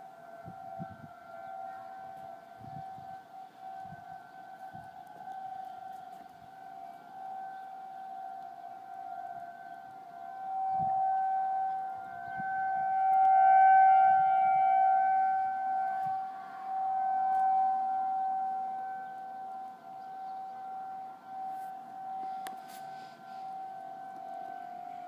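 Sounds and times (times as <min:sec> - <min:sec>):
warning siren: 0:00.0 - 0:25.0.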